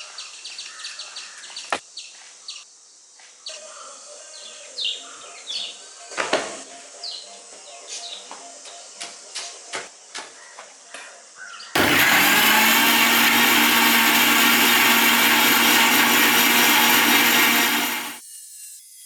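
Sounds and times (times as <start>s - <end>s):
mixer grinder motor whirring: 11.8s - 18.2s.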